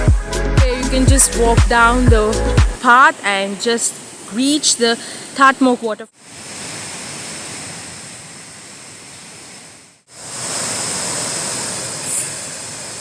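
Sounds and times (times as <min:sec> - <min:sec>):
waterfall rushing: 0:10.1 - 0:13.0.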